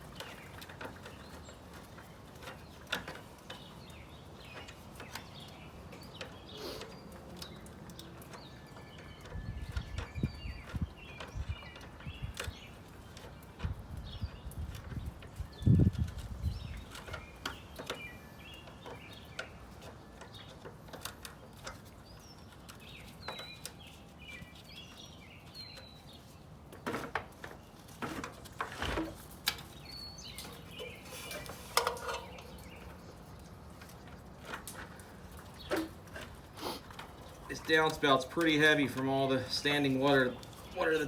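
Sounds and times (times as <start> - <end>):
birds chirping: 0.0 - 41.0
metal tools clicking and knocking: 30.8 - 33.0.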